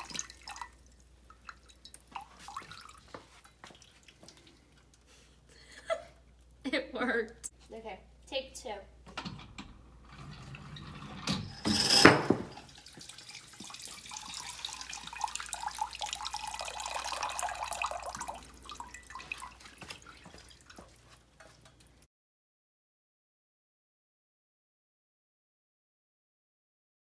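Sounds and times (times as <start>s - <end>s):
water dripping through coffee grounds: 0.0s - 5.2s, 12.6s - 22.1s
parts clattering together: 11.6s - 12.7s.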